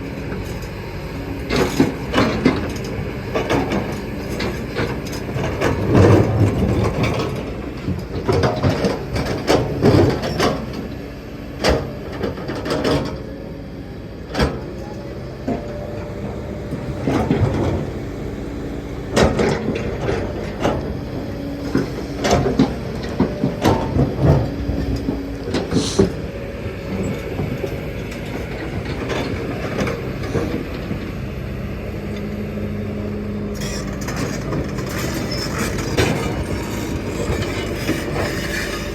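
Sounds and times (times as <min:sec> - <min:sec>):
excavator diesel engine under load: 0:00.0 - 0:38.9.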